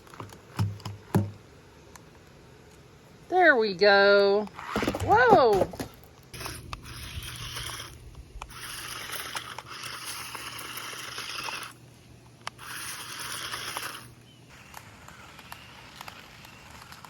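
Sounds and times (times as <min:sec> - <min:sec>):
faint steady hum: 0:00.0 - 0:17.0
toy car motors whirring: 0:06.3 - 0:17.0.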